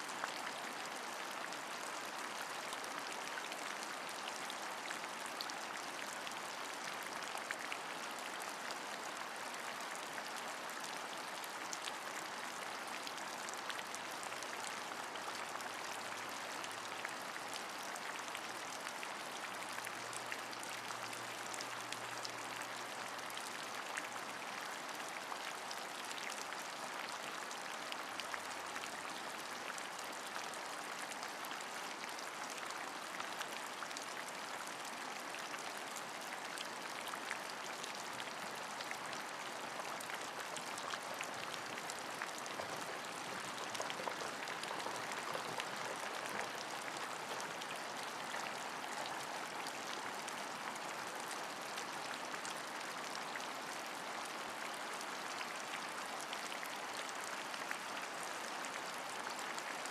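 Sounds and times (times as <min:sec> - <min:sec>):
steady rain hiss: 0:00.0 - 0:56.2
raindrops ticking: 0:41.6 - 0:47.7.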